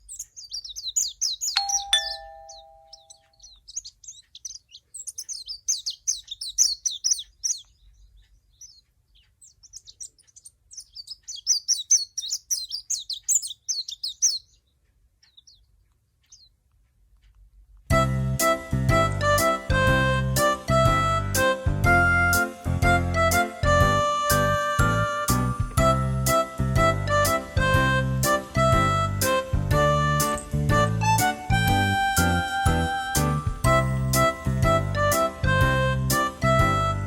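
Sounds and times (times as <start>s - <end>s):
small birds twittering: 0.0s - 17.1s, 27.1s - 35.4s
two-note ding-dong chime: 1.6s - 3.3s.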